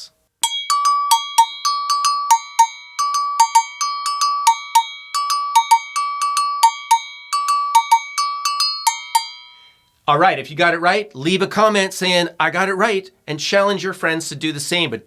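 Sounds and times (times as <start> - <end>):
agogo bells struck rhythmically: 0.4 - 9.9.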